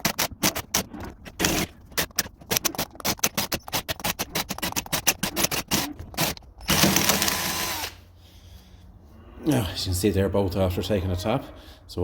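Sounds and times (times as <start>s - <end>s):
hand tools clicking on metal: 0.0s - 7.4s.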